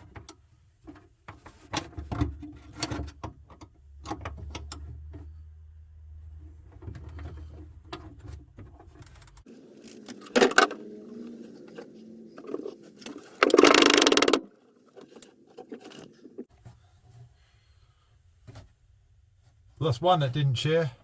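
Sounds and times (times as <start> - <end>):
impact wrench hammering: 13.4 - 14.4.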